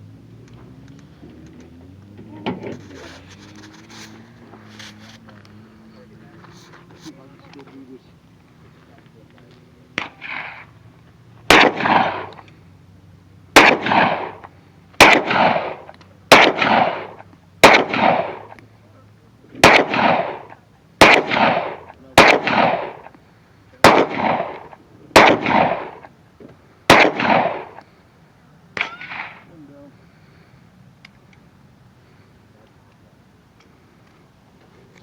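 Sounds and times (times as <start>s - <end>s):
gunshots with long echo: 10.0s - 10.8s, 11.5s - 12.5s, 13.5s - 18.6s, 19.6s - 23.2s, 23.8s - 26.2s, 26.9s - 27.9s, 28.8s - 29.5s.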